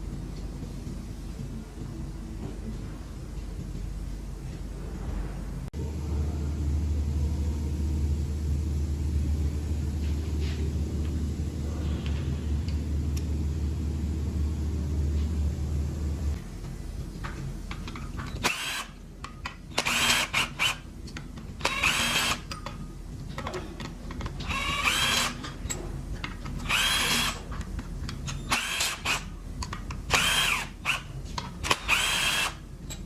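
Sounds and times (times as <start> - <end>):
power driver motor whine: 26.6 - 27.4, 30.1 - 31.0.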